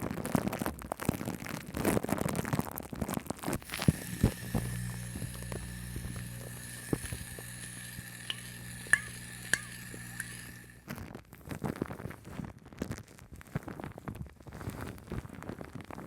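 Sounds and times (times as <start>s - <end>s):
shaving foam popping and crackling: 3.5s - 10.8s
steady low hum: 3.6s - 10.8s.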